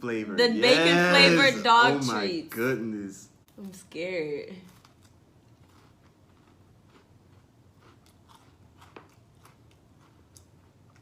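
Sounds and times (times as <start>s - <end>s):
chewing and crunching snack: 4.6s - 11.0s.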